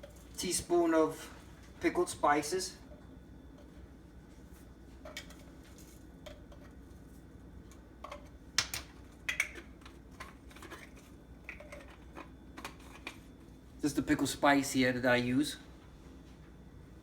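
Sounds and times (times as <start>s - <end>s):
faint steady hum: 0.0s - 17.0s
kitchen items clicking and tapping: 8.0s - 13.2s.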